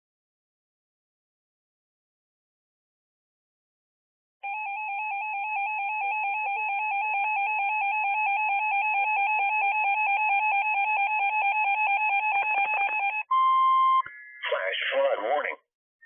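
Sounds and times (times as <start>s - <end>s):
warbling emergency alert tone: 4.4s - 15.3s.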